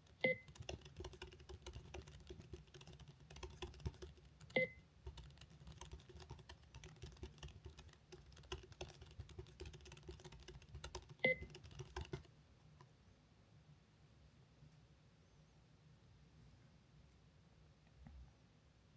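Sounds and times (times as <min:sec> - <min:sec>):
fast typing on computer keyboard: 0:00.0 - 0:12.3.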